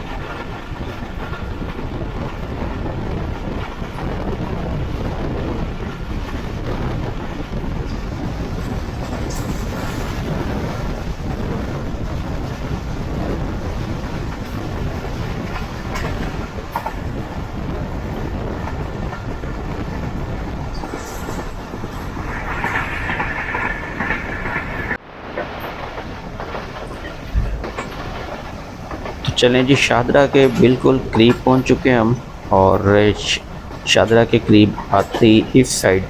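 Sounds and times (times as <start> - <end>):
train wheels rumbling on rail: 0.0 - 36.0
track clicks: 13.7 - 36.0.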